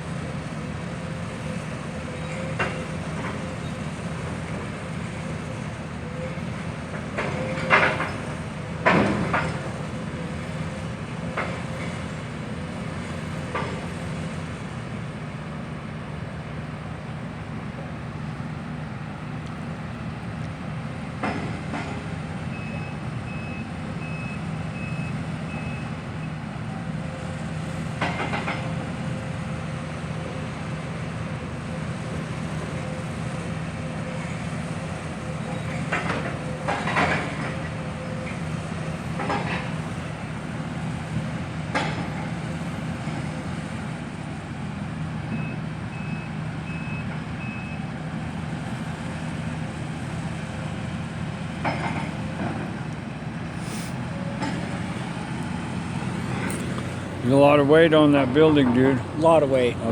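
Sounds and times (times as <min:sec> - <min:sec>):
backup alarm beeps: 0:22.6 - 0:26.4, 0:45.4 - 0:47.8
heavy demolition machinery running: 0:48.2 - 0:59.9.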